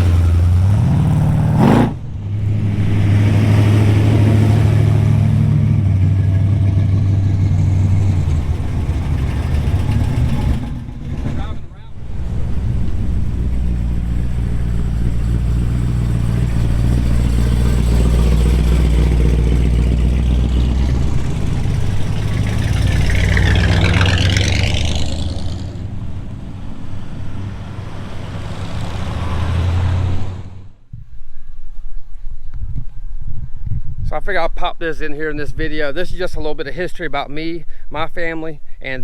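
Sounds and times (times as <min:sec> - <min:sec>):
car engine running: 0:00.0 - 0:30.9.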